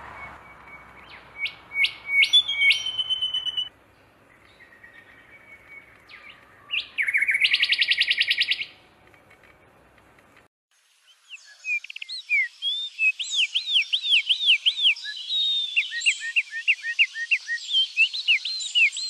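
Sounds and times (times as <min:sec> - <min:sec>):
songbirds singing: 0:00.0 - 0:10.4, 0:11.0 - 0:19.0
fast bird trill: 0:00.2 - 0:03.7, 0:04.7 - 0:08.8.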